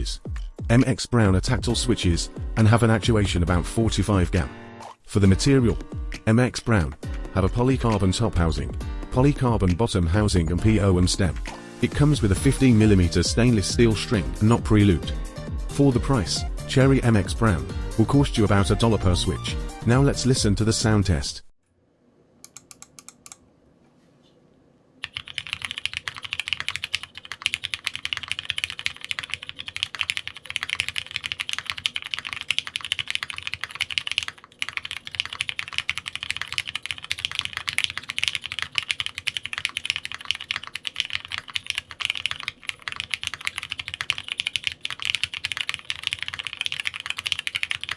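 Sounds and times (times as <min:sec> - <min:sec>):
mechanical keyboard typing: 0:25.0 - 0:47.9.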